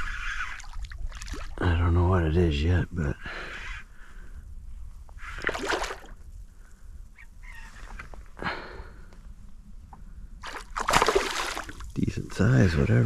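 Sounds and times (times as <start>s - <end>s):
water splashing: 0.0s - 1.6s, 5.4s - 6.2s, 10.4s - 12.0s
steady low rumble: 0.0s - 13.0s.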